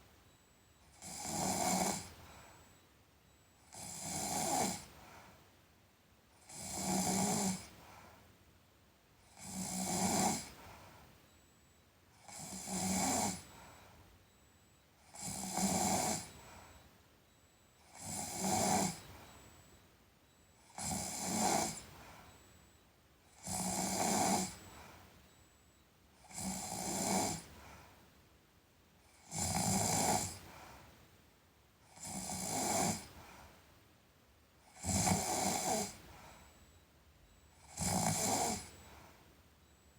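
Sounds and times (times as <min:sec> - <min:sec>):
person snoring: 0:18.0 - 0:19.0, 0:20.8 - 0:21.8, 0:29.3 - 0:30.4, 0:34.8 - 0:36.0, 0:37.6 - 0:38.7.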